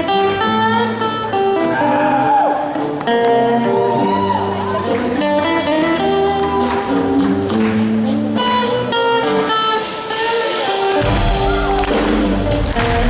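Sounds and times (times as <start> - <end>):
lead guitar melody: 0.0 - 13.0
live rock band playing: 0.0 - 13.0
heavy bass: 11.0 - 13.0.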